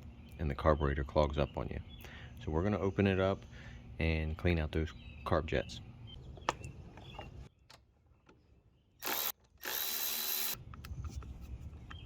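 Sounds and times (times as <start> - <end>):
power tool running: 9.0 - 10.6.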